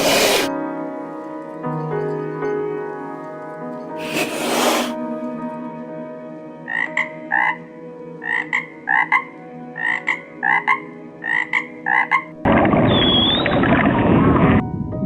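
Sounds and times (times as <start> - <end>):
frog croaking: 6.6 - 13.4.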